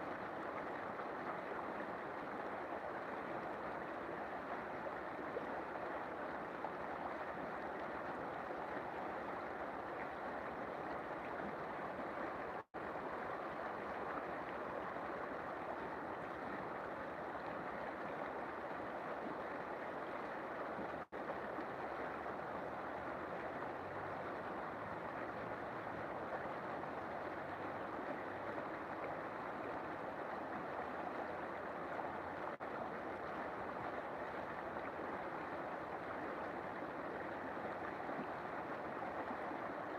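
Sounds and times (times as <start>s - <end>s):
river water rushing: 0.0s - 39.9s.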